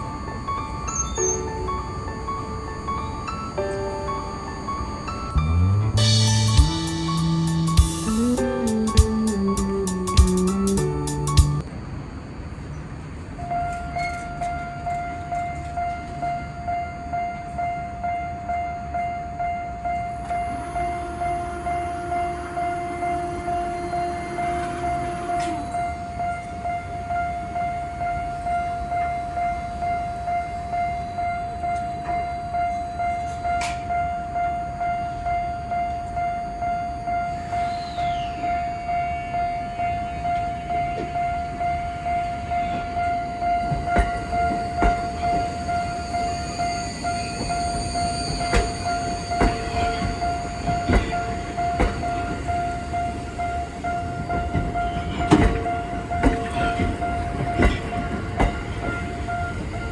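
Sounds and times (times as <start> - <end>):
level crossing bell ringing: 5.5 - 11.6
train wheels knocking on rails: 6.0 - 11.6, 43.6 - 46.6, 47.3 - 59.9.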